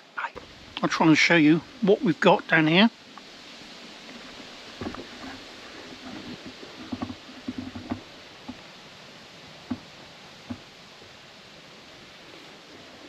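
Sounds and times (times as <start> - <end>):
faint steady hiss: 0.0 - 13.0
soft irregular knocks and bumps: 4.1 - 8.6, 9.6 - 10.7.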